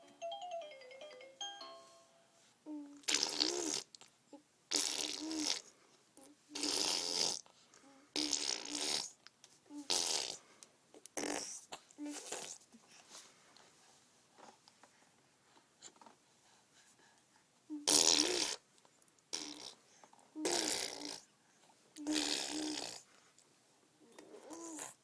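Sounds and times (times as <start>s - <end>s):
baby humming: 2.6s - 5.6s, 20.4s - 21.2s, 22.0s - 23.0s, 24.1s - 25.0s
baby blowing raspberries: 2.7s - 4.1s, 4.7s - 5.7s, 6.5s - 7.5s, 8.1s - 10.4s, 11.2s - 12.6s, 17.7s - 18.6s, 19.3s - 19.8s, 20.4s - 21.3s, 22.0s - 23.1s, 24.3s - 25.0s.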